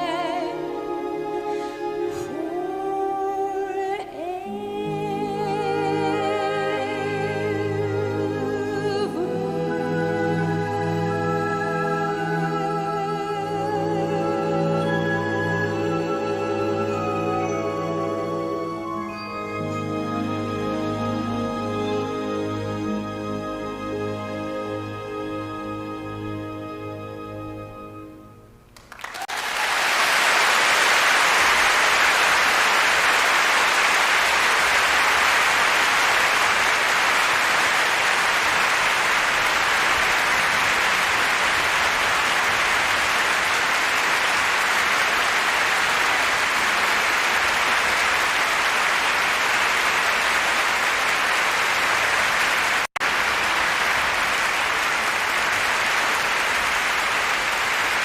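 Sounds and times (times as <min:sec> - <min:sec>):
large audience applauding: 0:28.8 - 0:58.0.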